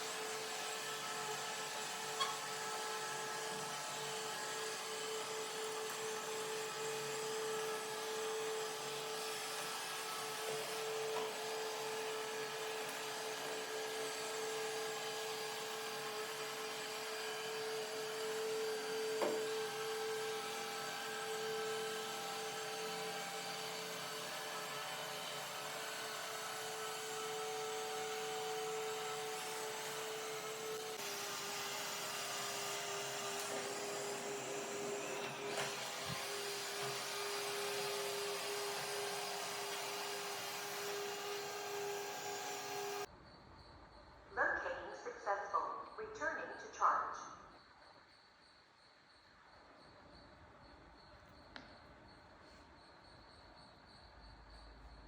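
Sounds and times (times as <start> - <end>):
robot vacuum running: 0.0 - 43.1.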